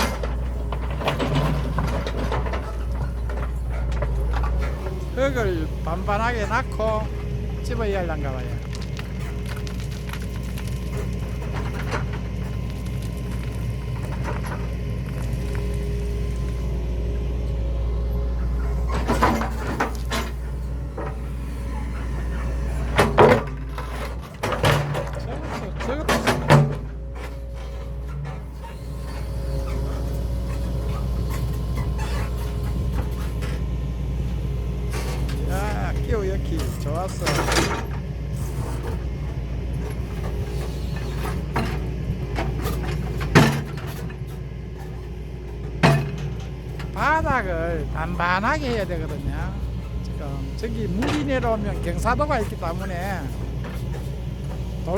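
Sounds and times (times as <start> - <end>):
excavator diesel engine running: 0.0 - 54.9
rocks knocking and clattering: 7.8 - 16.6.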